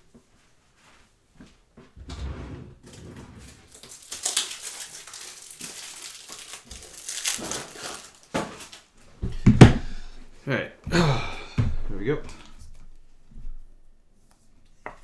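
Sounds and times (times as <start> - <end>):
plastic packaging crinkling: 3.6 - 9.0.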